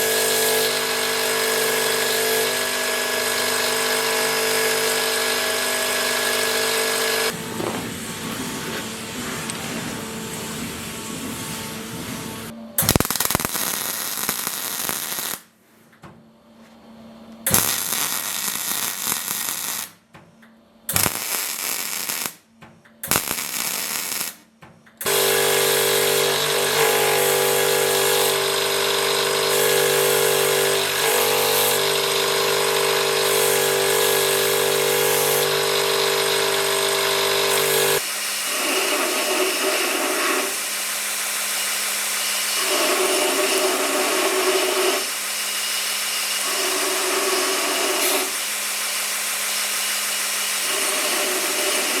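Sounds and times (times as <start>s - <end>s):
electric motor running: 0.0s - 7.4s, 25.1s - 52.0s
power tool noisy bursts: 0.0s - 7.9s, 25.0s - 52.0s.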